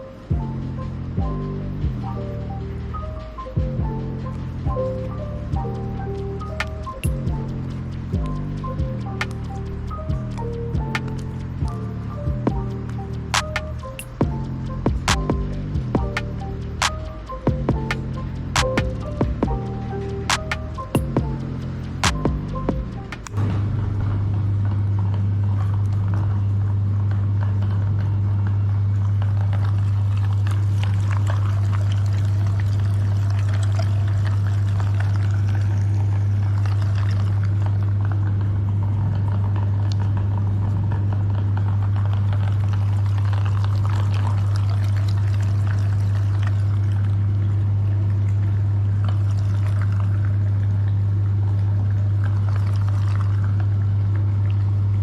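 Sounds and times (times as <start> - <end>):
wet squishing and pouring: 29.2 - 38.2, 41.3 - 54.7.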